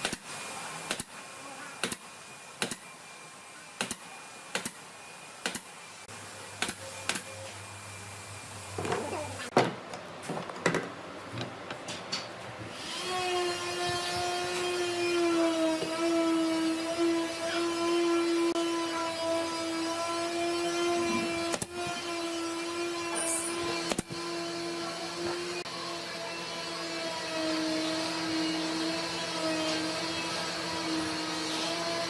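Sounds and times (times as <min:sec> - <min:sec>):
power tool motor whine: 0:12.7 - 0:32.0.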